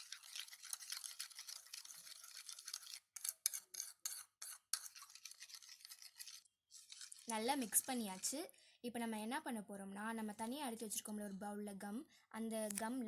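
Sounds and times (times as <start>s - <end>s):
spoon scraping in a cup: 0.0s - 8.6s, 10.4s - 11.6s.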